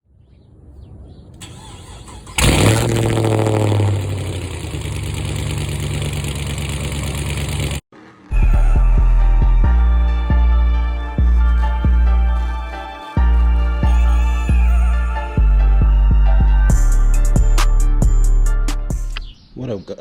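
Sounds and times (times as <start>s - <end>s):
car engine starting and idling: 1.4s - 7.9s
music with heavy bass beat: 8.3s - 12.4s, 13.2s - 19.2s.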